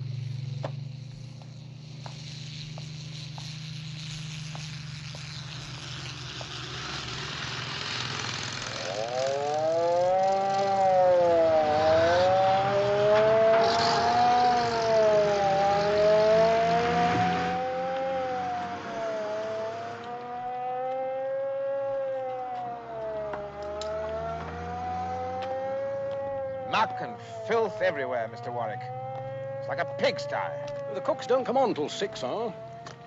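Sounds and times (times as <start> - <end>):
hiss: 1.1 - 8.8
air raid siren wailing: 3.7 - 33.0.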